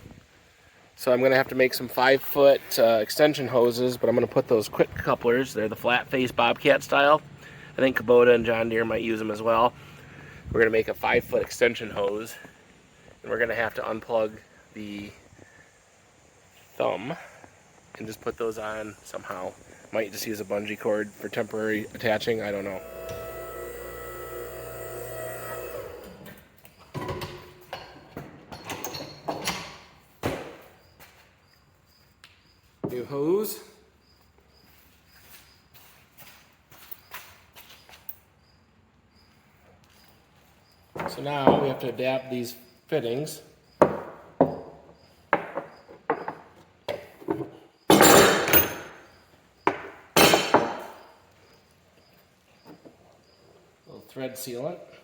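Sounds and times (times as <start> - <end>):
hard parts knocking and clattering: 26.9 - 30.6, 43.8 - 49.1, 49.7 - 51.0
metal parts clinking: 47.9 - 49.0.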